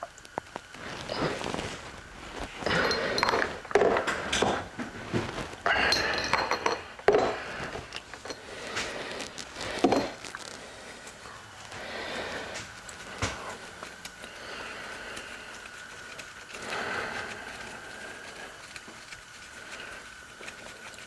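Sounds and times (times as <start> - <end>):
metal tools clinking and knocking: 2.6 - 4.7, 5.6 - 8.5.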